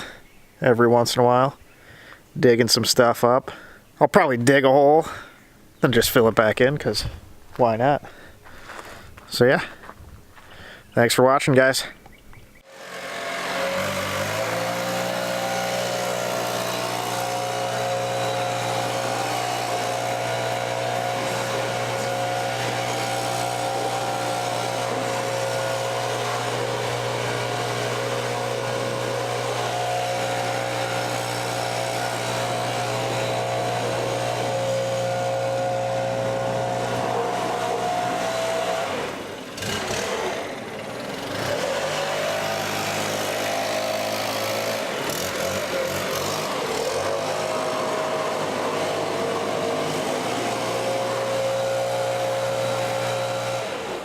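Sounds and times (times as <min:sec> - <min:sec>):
tractor diesel engine running: 0:12.6 - 0:54.0.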